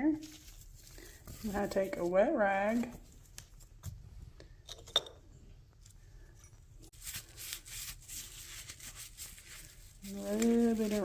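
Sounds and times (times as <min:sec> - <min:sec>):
wet rag scrubbing metal: 0:06.9 - 0:11.0.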